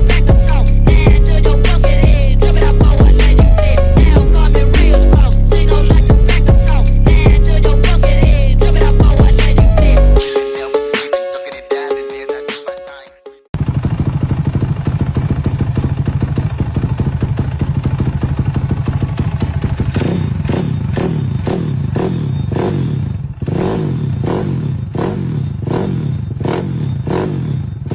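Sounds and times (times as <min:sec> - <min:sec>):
motorcycle engine idling and revving: 0:00.0 - 0:10.7, 0:13.5 - 0:27.9.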